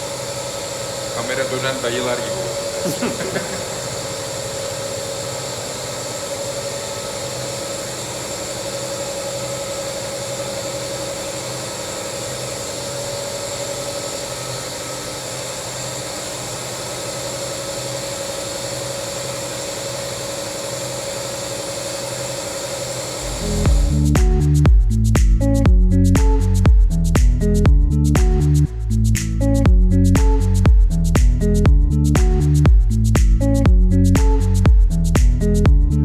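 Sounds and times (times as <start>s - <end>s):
machine drone with hiss: 0.0s - 24.2s.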